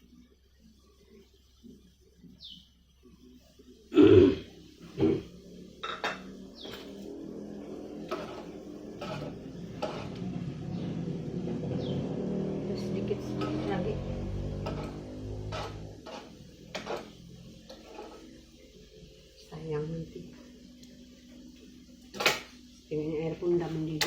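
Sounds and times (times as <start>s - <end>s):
water heating hiss: 0.0s - 10.5s, 13.9s - 24.0s
person making throat sounds: 3.9s - 5.3s
pots and utensils clinking: 5.8s - 7.0s.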